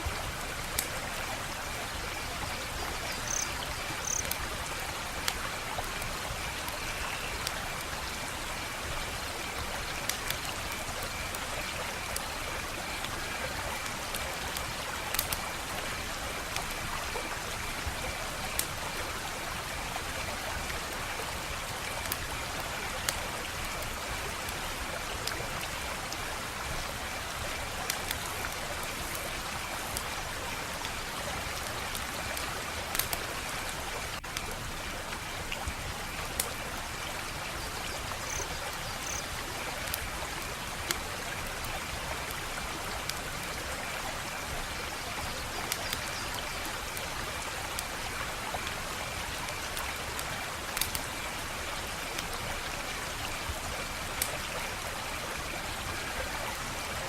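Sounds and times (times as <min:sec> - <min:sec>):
wood fire crackling: 0:13.0 - 0:15.6, 0:27.0 - 0:35.7, 0:50.7 - 0:51.1.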